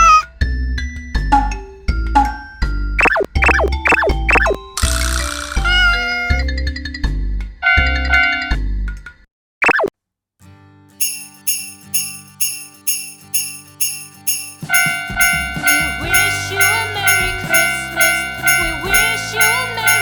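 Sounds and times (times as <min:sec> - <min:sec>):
wavering melody: 0:01.4 - 0:04.6, 0:11.0 - 0:20.0
small bells shaking in rhythm: 0:11.0 - 0:20.0
steady high tones: 0:11.0 - 0:20.0.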